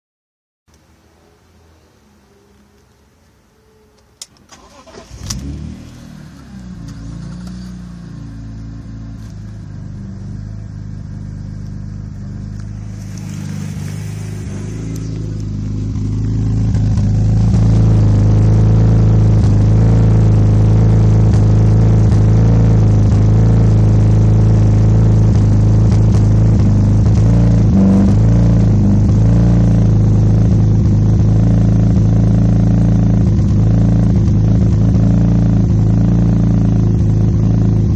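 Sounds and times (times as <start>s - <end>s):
car engine idling: 0.9s - 37.9s
engine revving burst: 4.5s - 8.4s, 12.5s - 20.3s.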